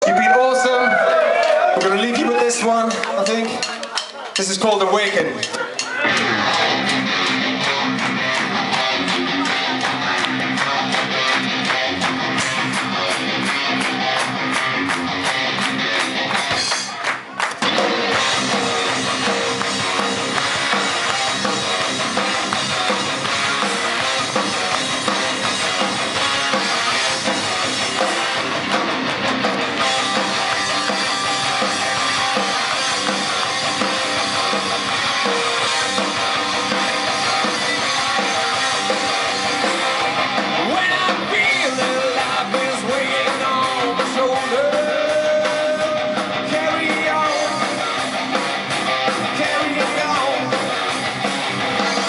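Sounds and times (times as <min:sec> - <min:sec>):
drum kit: 0:00.2 - 0:52.0
electric guitar: 0:05.9 - 0:52.0.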